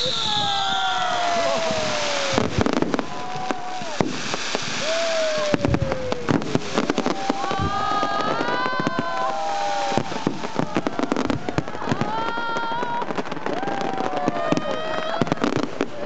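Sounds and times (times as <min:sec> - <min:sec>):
sliding whistle-like tones: 0:00.0 - 0:02.5
firecrackers banging: 0:00.0 - 0:16.0.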